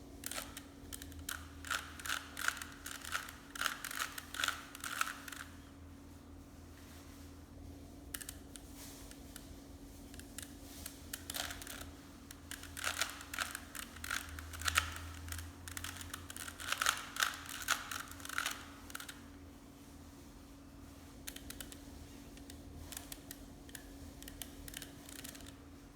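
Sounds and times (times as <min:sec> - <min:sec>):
plastic puzzle cube clicking: 0:00.2 - 0:05.5, 0:12.4 - 0:19.2.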